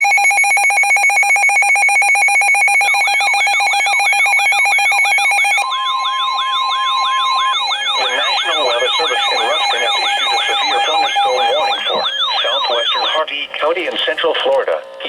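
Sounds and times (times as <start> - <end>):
steady alarm tone: 0.0 - 15.0.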